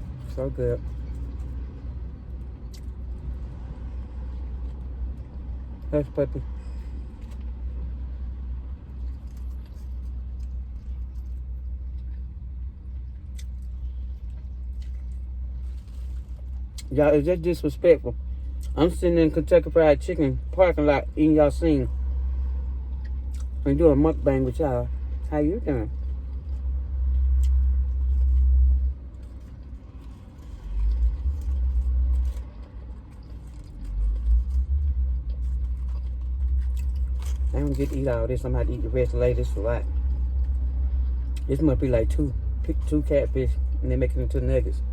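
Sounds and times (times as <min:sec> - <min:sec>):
vehicle engine idling: 0:00.0 - 0:44.9
low rumble: 0:20.4 - 0:44.9.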